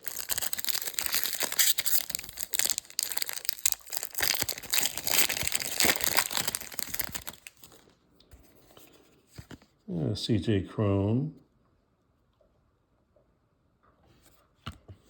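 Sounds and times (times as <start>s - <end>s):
plastic wrapper crinkling: 0.0s - 7.8s.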